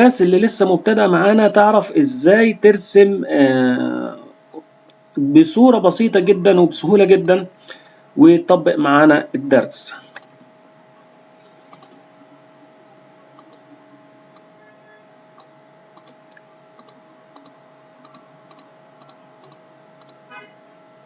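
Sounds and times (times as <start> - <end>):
faint steady hum: 0.0 - 21.0
computer mouse clicking: 11.7 - 12.0, 13.4 - 13.6, 15.4 - 20.2.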